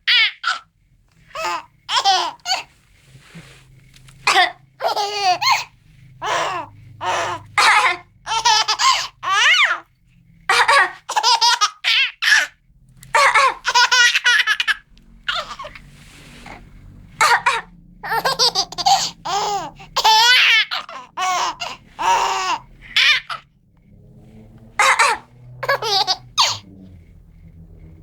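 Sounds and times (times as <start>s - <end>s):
baby laughing: 0.0s - 0.6s, 1.3s - 2.7s, 4.2s - 9.9s, 10.5s - 12.5s, 13.1s - 15.8s, 17.2s - 23.5s, 24.8s - 27.0s.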